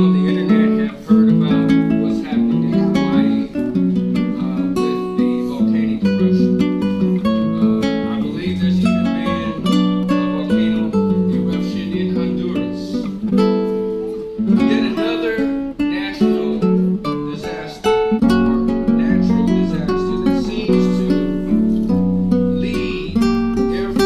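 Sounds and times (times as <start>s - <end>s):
acoustic guitar music: 0.0s - 24.0s.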